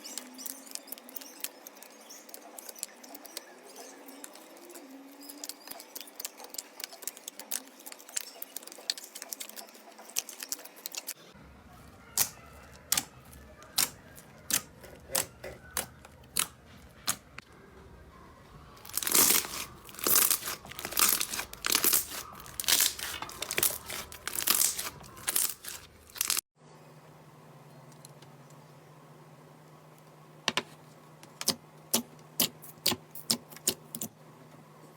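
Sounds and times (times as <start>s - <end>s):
slime crackling and clicking: 12.2s - 17.3s, 18.9s - 26.4s.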